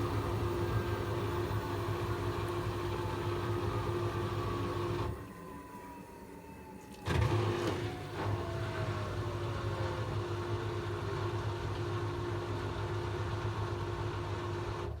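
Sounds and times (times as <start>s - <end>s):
washing machine motor whine: 0.0s - 15.0s.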